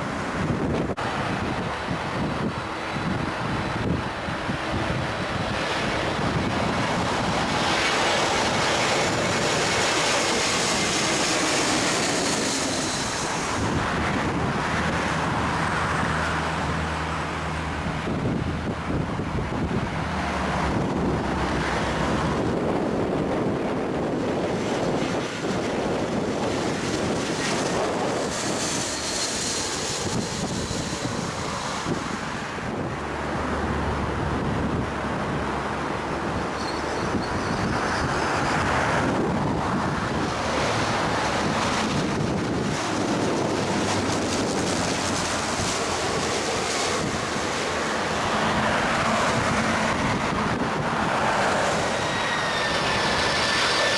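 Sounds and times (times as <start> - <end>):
jet airliners rumbling: 0.0 - 53.9
wind buffeting microphone: 0.0 - 53.9
high-pitched jet engine hiss: 3.8 - 15.4, 24.8 - 32.7, 36.5 - 53.9.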